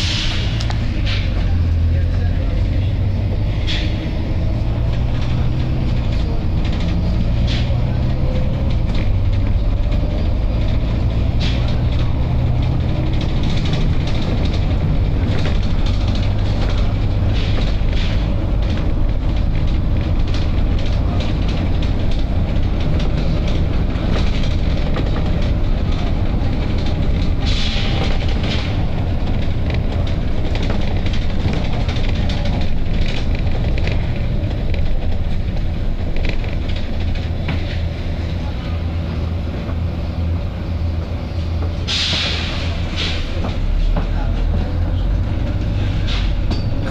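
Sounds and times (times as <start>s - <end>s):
bus diesel engine idling: 0.0s - 46.9s
compressed air hisses: 41.9s - 43.2s.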